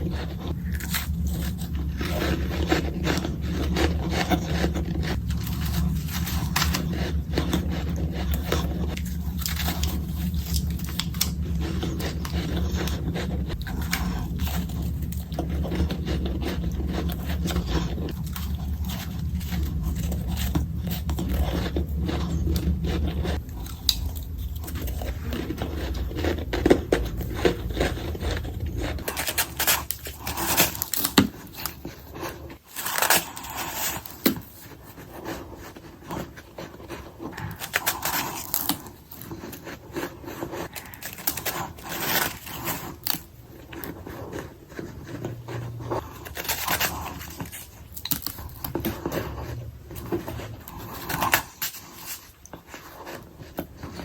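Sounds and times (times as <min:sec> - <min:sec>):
low hum: 0:00.0 - 0:32.5
person crunching ice: 0:00.0 - 0:54.0.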